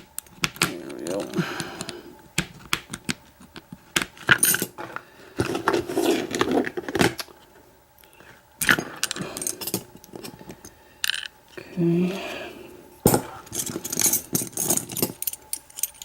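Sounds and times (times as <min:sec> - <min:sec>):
steel lock parts clicking: 0:13.6 - 0:16.0.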